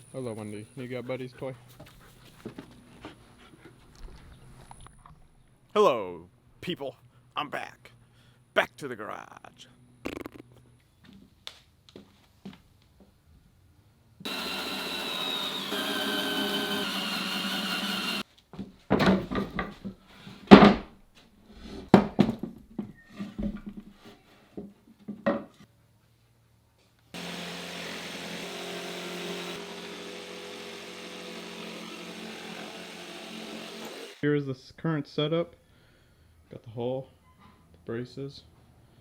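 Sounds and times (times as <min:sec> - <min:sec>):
power tool running: 0:14.2 - 0:18.2, 0:27.2 - 0:34.2.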